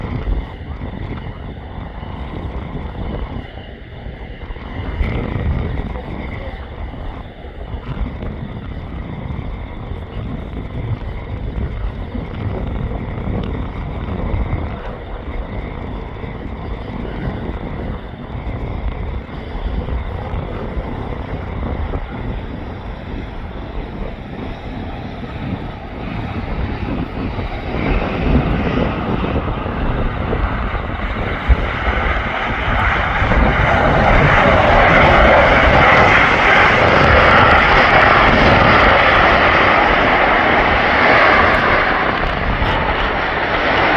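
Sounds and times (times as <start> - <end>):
jet airliner landing: 0.0 - 43.9.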